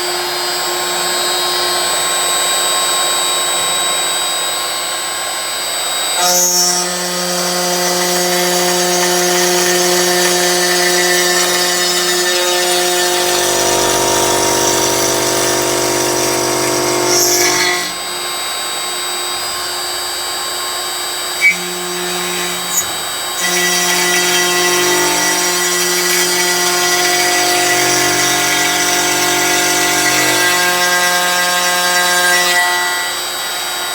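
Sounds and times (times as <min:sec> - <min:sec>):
machine motor whine: 0:06.2 - 0:18.9, 0:21.2 - 0:33.5.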